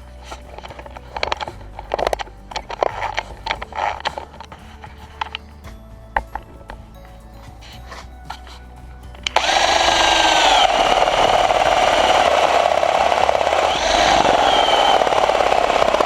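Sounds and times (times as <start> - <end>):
cordless drill whining: 9.2 - 16.0.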